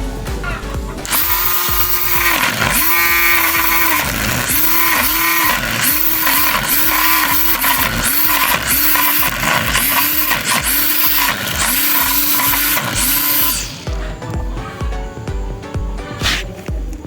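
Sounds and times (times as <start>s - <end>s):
small motor revving to a whine: 1.0s - 14.0s.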